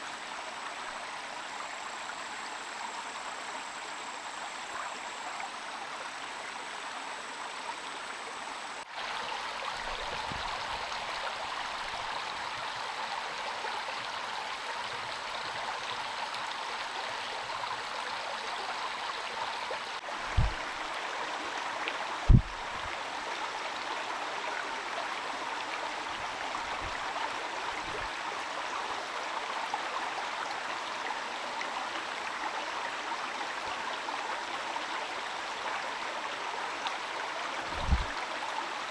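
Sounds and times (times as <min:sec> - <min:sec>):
dull low thuds: 0:20.3 - 0:20.8, 0:22.3 - 0:22.9, 0:37.7 - 0:38.2
heavy rain hissing: 0:37.6 - 0:38.2.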